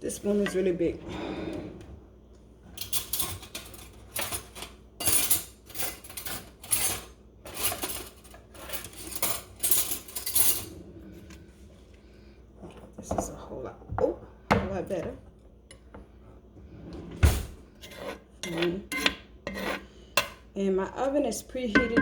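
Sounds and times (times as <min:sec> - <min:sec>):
metal spoons clinking against dishes: 0:02.8 - 0:10.7, 0:21.8 - 0:22.0.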